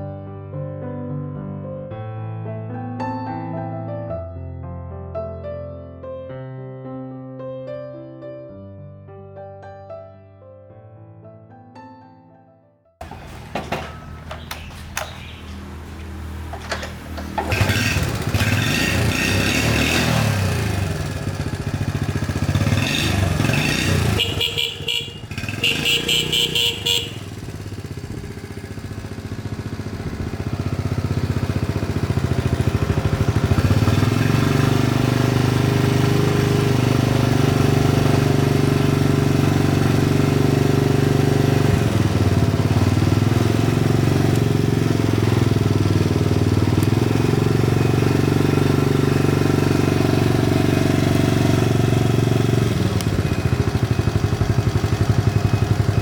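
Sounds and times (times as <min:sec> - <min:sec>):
small motorcycle engine running: 0:13.0 - 0:56.0.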